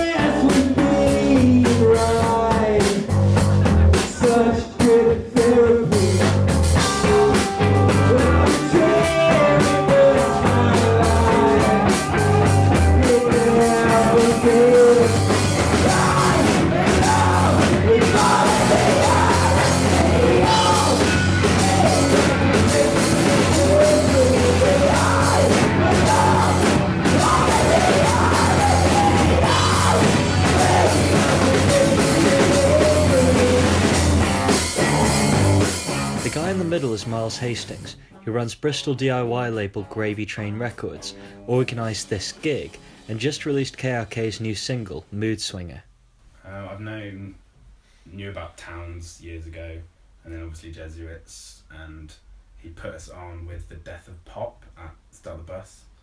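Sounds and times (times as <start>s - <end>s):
person singing: 0.0s - 35.6s, 36.2s - 38.2s
distorted electric guitars: 0.0s - 37.9s
bass guitar: 0.0s - 38.0s
drum kit: 0.0s - 38.0s, 40.2s - 44.2s.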